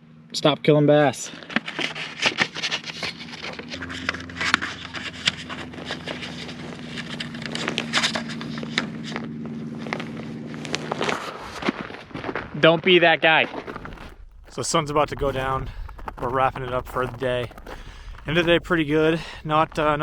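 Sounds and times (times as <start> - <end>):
footsteps on snow and ice: 1.3 - 20.0
engine running: 1.4 - 12.1.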